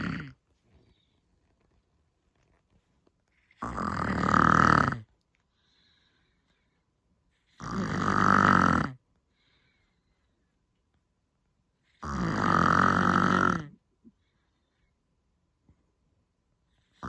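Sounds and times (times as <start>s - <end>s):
woman snoring: 0.0s - 0.3s, 3.6s - 5.1s, 7.6s - 9.0s, 12.0s - 13.7s
faint breath: 5.4s - 7.6s, 9.2s - 10.6s, 14.0s - 15.1s.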